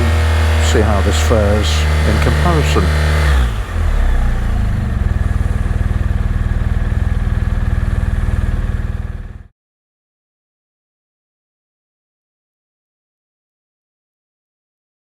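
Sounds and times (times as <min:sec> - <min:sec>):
motorcycle engine running: 0:00.0 - 0:09.5.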